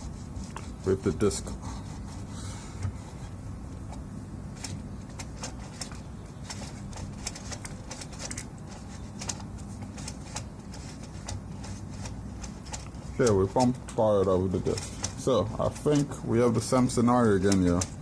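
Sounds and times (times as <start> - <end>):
light clicks and taps: 17.4 - 18.0.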